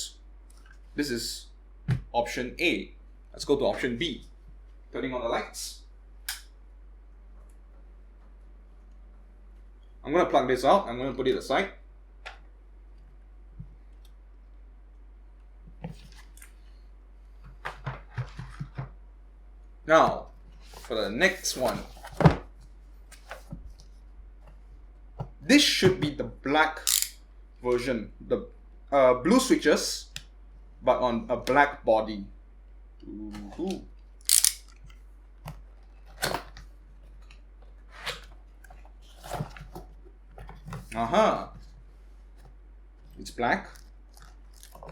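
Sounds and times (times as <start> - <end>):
sharp click: 26.8 - 27.2, 34.3 - 34.7.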